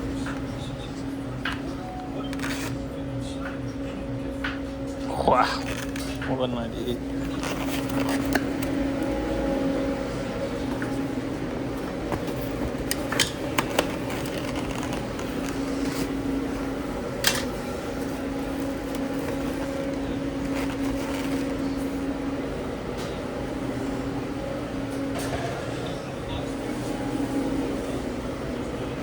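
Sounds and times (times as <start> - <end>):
kitchen machinery hum: 0.0 - 29.0
utensils clicking and knocking: 17.2 - 17.6.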